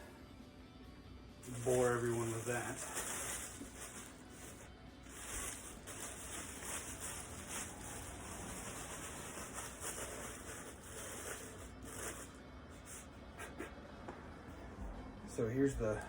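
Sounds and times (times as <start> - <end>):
packaging rustling: 1.5 - 12.4.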